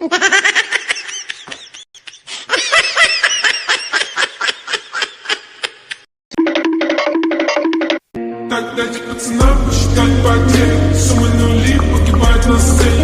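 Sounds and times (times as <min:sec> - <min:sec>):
high-pitched giggling laugh: 0:00.0 - 0:06.1.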